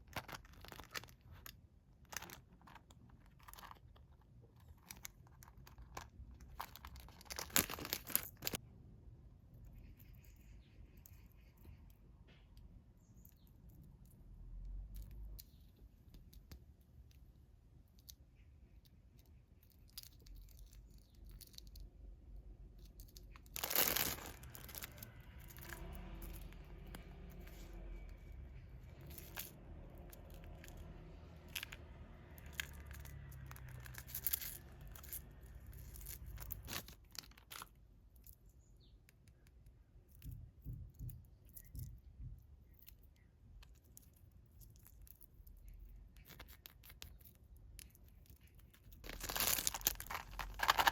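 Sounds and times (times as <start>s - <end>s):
packaging tearing and crinkling: 0.0s - 3.9s, 4.6s - 8.6s, 23.2s - 28.1s, 32.4s - 37.7s, 49.0s - 50.9s.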